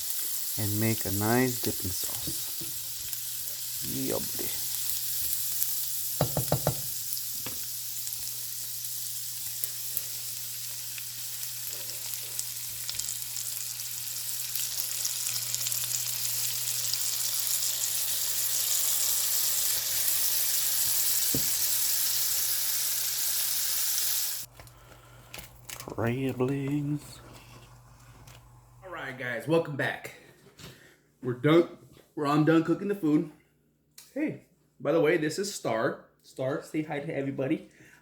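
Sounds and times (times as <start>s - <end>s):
butter sizzling in a pan: 0.0s - 24.5s.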